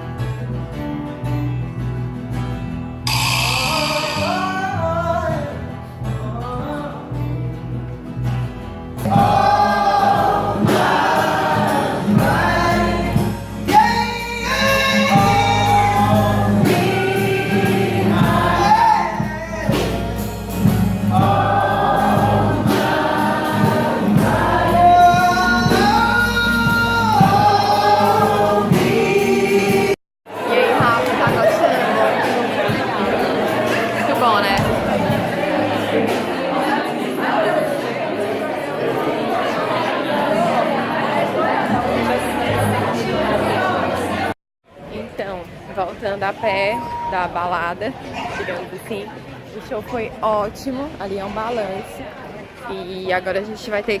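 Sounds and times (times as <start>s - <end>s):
song with instrumental accompaniment: 0.0s - 36.5s
guitar: 0.0s - 54.0s.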